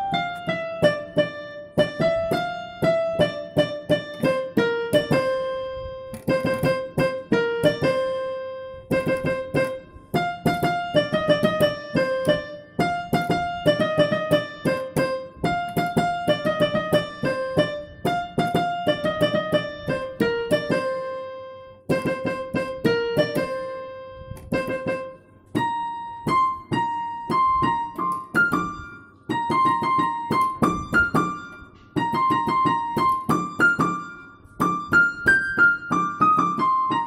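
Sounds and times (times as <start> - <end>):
gentle piano music: 0.0 - 37.0.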